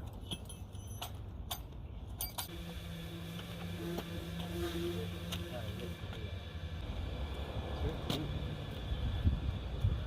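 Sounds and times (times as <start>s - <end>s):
steady low rumble: 5.4s - 10.0s.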